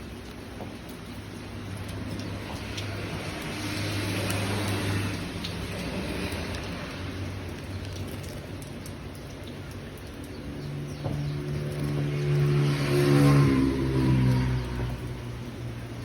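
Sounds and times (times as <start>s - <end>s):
motor vehicle passing by: 1.6s - 16.0s.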